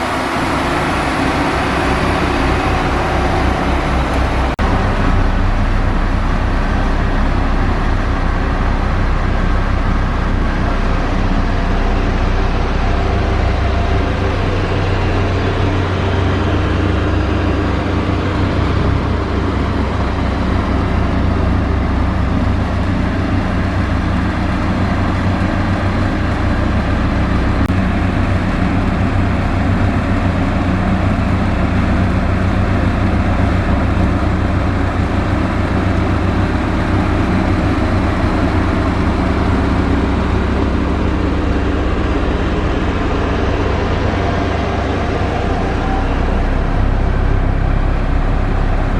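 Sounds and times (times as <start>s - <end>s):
diesel engine rumbling: 0.0s - 48.9s.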